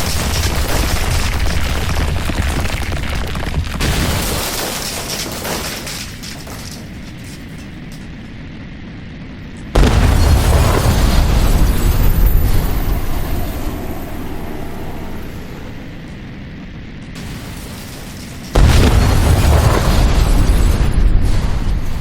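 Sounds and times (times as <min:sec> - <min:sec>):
low rumble: 0:07.6 - 0:22.0
loud boom: 0:09.8 - 0:14.0, 0:18.5 - 0:22.0.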